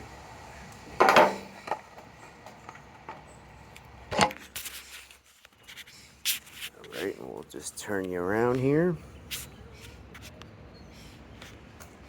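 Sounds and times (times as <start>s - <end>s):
knocks of objects set down: 1.0s - 1.8s.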